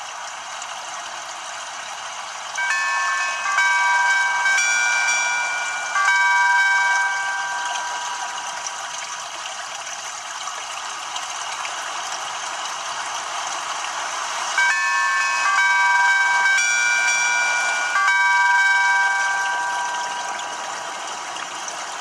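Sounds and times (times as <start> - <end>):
chiming electronic notes: 2.6 - 9.3, 14.5 - 22.0.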